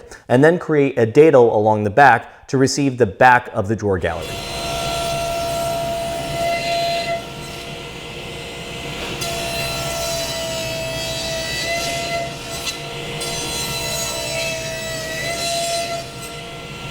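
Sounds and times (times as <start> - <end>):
power saw cutting wood: 4.0 - 16.9.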